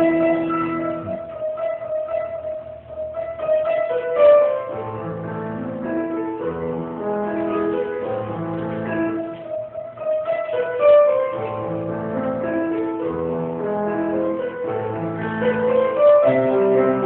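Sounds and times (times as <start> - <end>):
slow piano music: 0.0 - 17.0.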